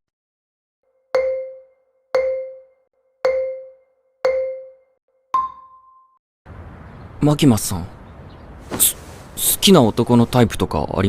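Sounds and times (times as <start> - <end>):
short mallet-like tones: 1.2 - 6.2.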